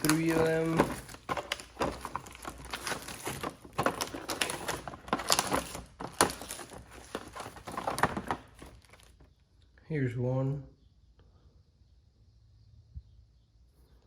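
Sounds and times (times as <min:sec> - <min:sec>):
plastic tools clicking: 0:00.0 - 0:09.1.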